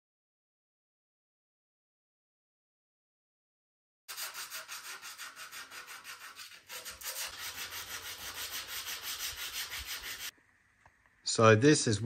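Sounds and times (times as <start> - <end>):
sandpaper rubbing on plastic: 4.1 - 10.3.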